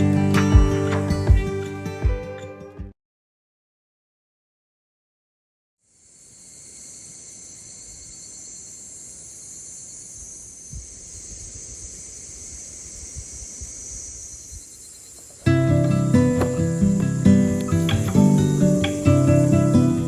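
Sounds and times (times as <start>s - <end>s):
acoustic guitar music: 0.0s - 2.9s, 15.4s - 20.0s
insects chirring: 5.8s - 20.0s.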